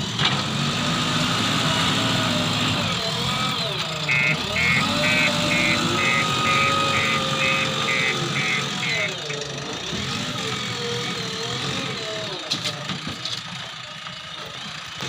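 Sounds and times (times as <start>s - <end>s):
diesel engine running: 0.0s - 15.0s
hydraulic whine: 3.9s - 9.4s
steady beeping: 4.0s - 9.4s.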